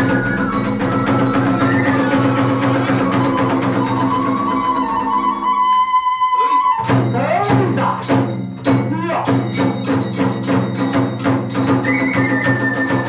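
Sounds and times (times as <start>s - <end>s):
drum beating quick rhythm: 0.0s - 5.4s, 6.8s - 13.0s
hand cymbals: 0.0s - 13.0s.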